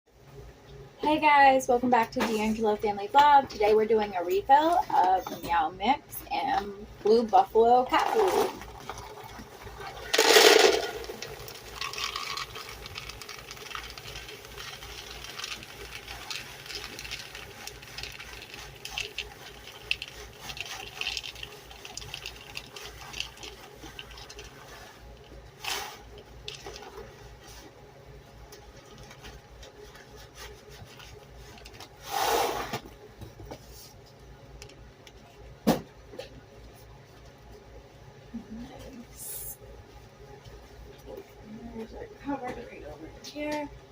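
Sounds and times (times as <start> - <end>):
cat kibble pouring: 8.0 - 27.1.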